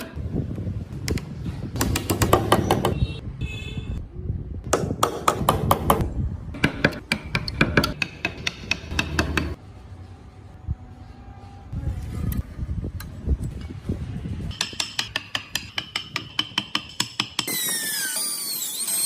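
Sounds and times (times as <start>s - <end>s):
chisel tapping into wood: 6.6s - 9.6s.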